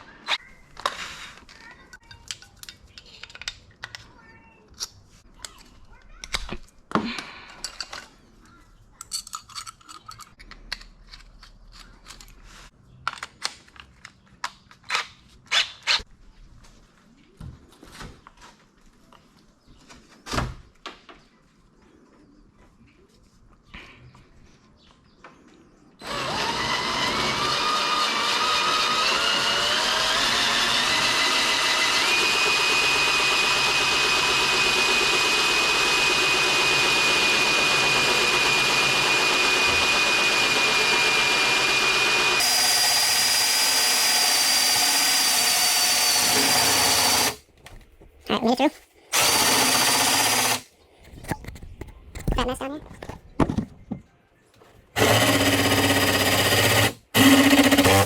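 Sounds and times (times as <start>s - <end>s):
power tool cutting carbon fiber: 26.0s - 47.4s, 49.2s - 50.6s, 55.0s - 58.0s.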